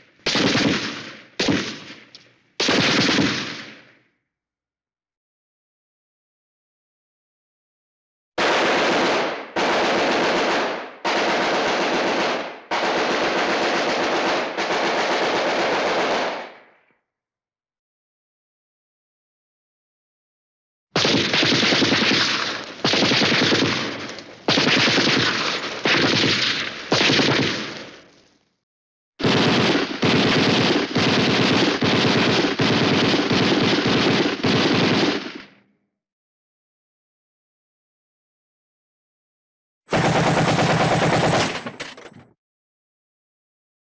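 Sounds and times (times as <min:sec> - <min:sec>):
machine-gun bursts: 0:21.0 - 0:27.8, 0:29.2 - 0:35.3, 0:39.9 - 0:42.1.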